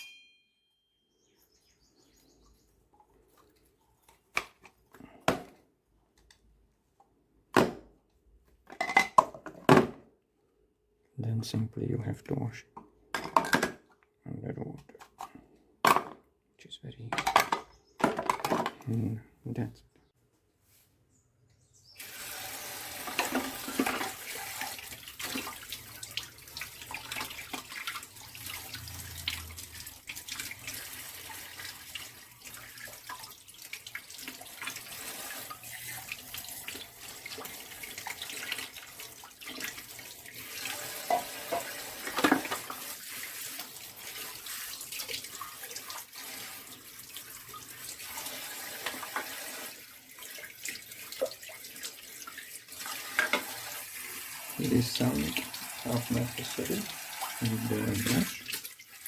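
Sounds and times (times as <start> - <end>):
plastic parts knocking: 8.6 - 10.1, 14.8 - 16.3, 17.1 - 18.9
tap water running: 21.9 - 59.0.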